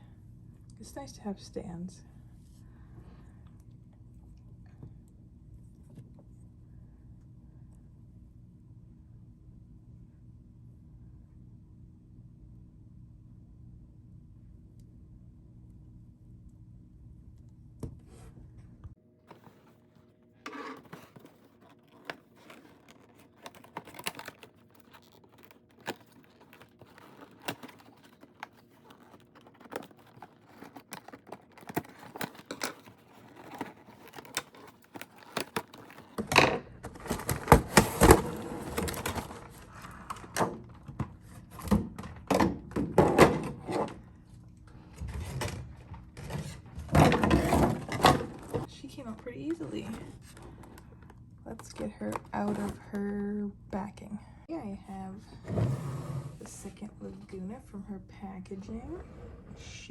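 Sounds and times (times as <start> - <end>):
plastic crinkling and rustling: 19.2 - 41.8, 45.1 - 53.0.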